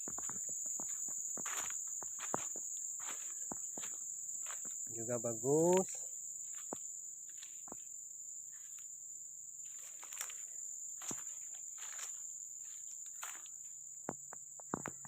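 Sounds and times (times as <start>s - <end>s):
footsteps rustling through undergrowth: 0.0s - 4.9s, 5.6s - 7.9s, 9.6s - 13.6s.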